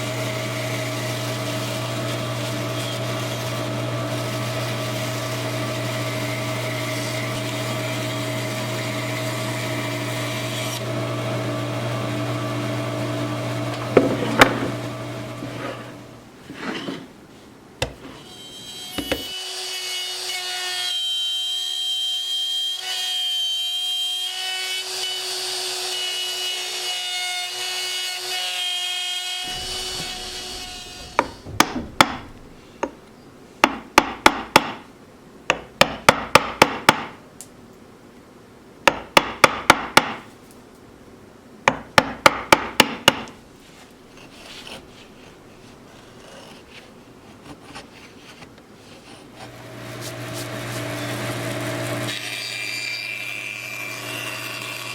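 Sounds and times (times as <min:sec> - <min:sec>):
high-pitched power tool: 0:29.5 - 0:31.4.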